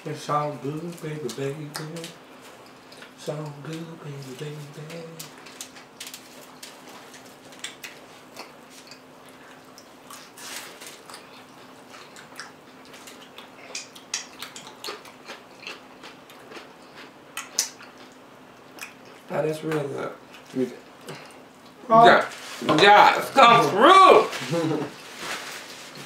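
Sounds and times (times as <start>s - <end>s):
person chewing crunchy food: 5.3s - 19.3s.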